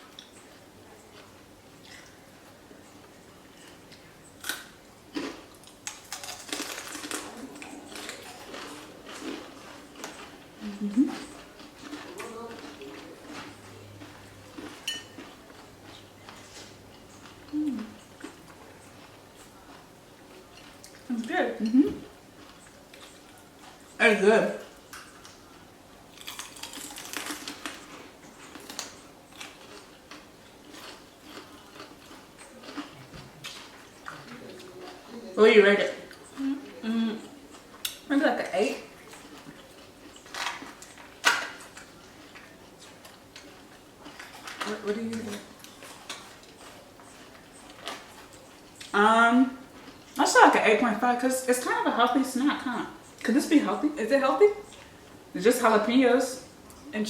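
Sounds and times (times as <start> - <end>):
crunching chips being chewed: 3.5 - 23.9, 24.6 - 35.1, 38.8 - 50.3.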